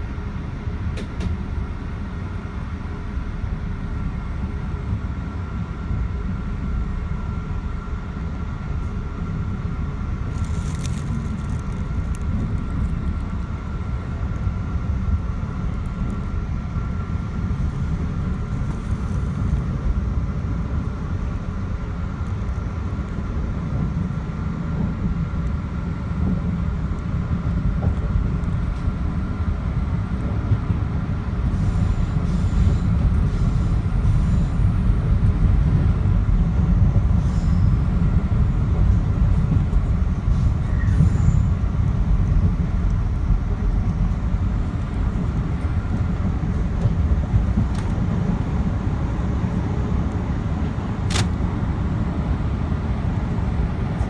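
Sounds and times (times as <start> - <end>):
train wheels rumbling: 0.5 - 25.2, 26.2 - 50.0
thin steady whine: 31.2 - 50.6.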